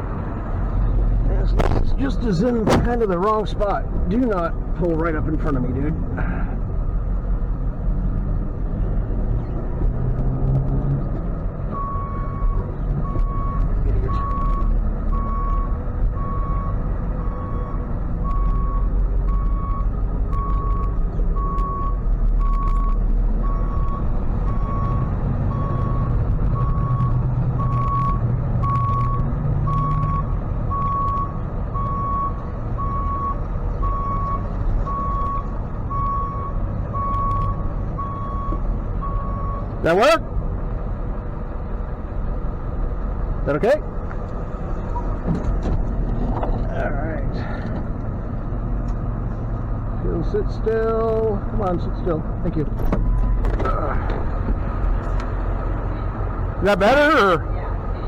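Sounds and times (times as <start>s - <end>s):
truck engine running: 0.0s - 10.1s
reversing alarm beeping: 11.8s - 39.7s.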